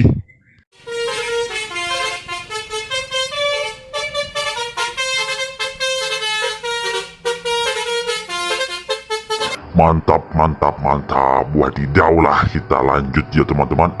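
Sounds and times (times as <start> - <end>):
melodic truck horn: 0.8 - 9.7.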